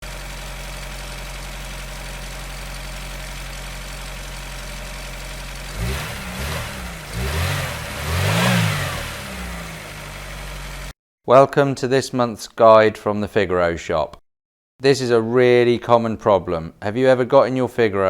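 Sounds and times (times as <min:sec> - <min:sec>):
car engine idling and revving: 0:00.0 - 0:11.0.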